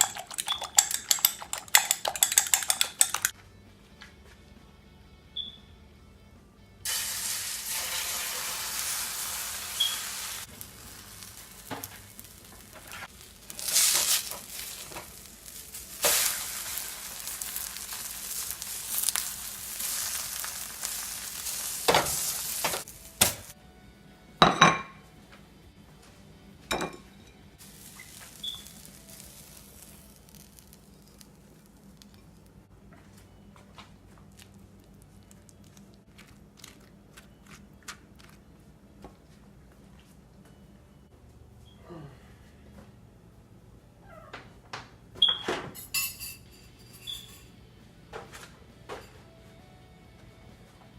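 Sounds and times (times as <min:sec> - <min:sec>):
utensils clinking on dishes: 0:00.0 - 0:03.3, 0:26.7 - 0:27.4, 0:45.3 - 0:47.6
food sizzling in a frying pan: 0:06.9 - 0:23.6, 0:27.6 - 0:31.8.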